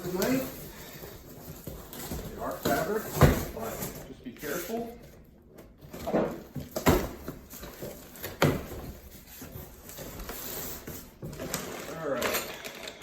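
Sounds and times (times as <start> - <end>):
packaging scraping and rustling: 7.5 - 13.0.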